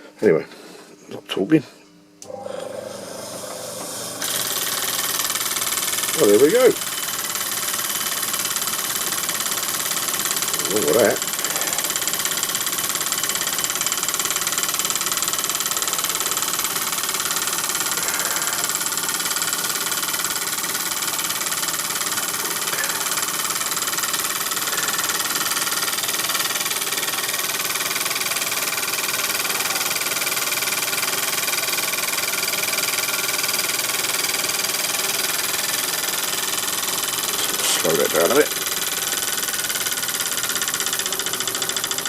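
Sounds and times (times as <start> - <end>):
model steam engine running: 2.2 - 42.0
hiss of air and exhaust: 10.6 - 12.4, 16.0 - 20.5, 21.9 - 27.6.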